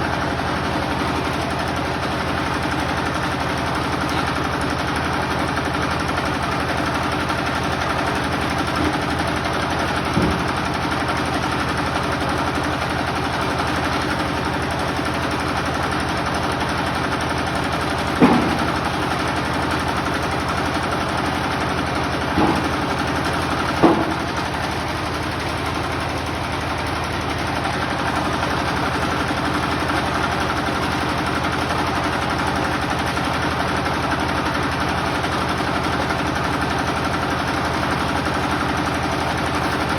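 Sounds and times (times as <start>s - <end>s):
generator engine running: 0.0s - 39.9s
short knocks: 18.2s - 19.0s, 22.3s - 23.0s, 23.7s - 24.6s.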